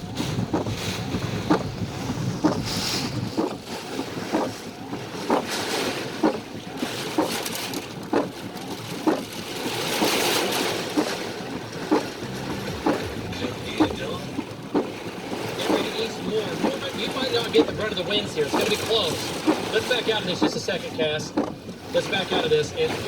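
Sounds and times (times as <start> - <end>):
wind and rain buffeting microphone: 0.0 - 23.0.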